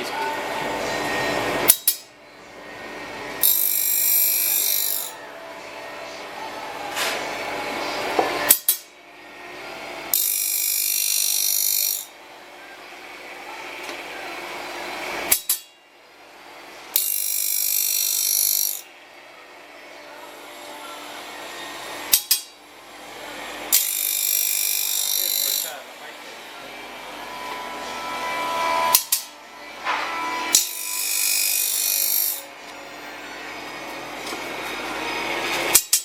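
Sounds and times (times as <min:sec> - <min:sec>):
saw blade sharpening machine grinding: 0:00.0 - 0:02.1, 0:02.7 - 0:05.9, 0:07.0 - 0:15.8, 0:16.6 - 0:18.9, 0:20.1 - 0:36.0
quiet rising machine noise: 0:00.0 - 0:10.6, 0:12.1 - 0:17.4, 0:25.8 - 0:35.8.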